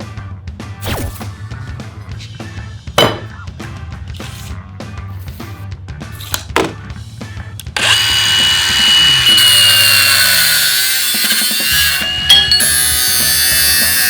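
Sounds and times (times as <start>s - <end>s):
power tool running: 7.8s - 14.0s.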